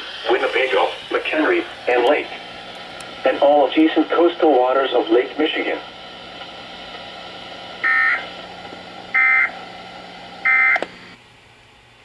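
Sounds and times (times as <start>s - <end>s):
radio hiss: 0.0s - 11.2s
digital tone bursts: 7.8s - 8.2s.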